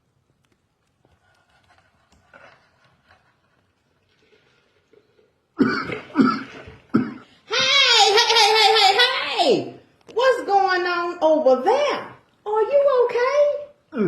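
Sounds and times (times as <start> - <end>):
person coughing: 5.6 - 7.3.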